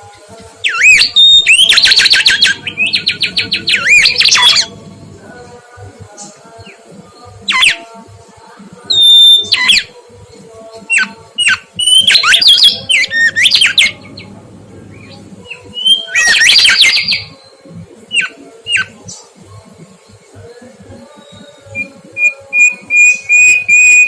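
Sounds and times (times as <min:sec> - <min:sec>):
bird whistling song: 0:00.6 - 0:05.2, 0:08.9 - 0:09.8, 0:10.9 - 0:14.3, 0:14.9 - 0:18.9, 0:21.2 - 0:24.0
faint steady hum: 0:01.2 - 0:06.2, 0:12.4 - 0:18.1.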